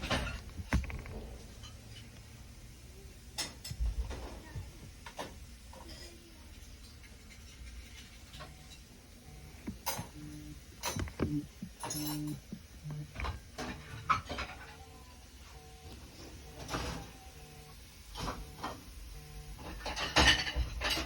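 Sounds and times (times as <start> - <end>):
dishes and cutlery clinking: 3.4 - 9.0, 9.6 - 15.1, 19.6 - 21.0
phone vibrating in buzzing pulses: 8.4 - 14.2, 14.8 - 20.5.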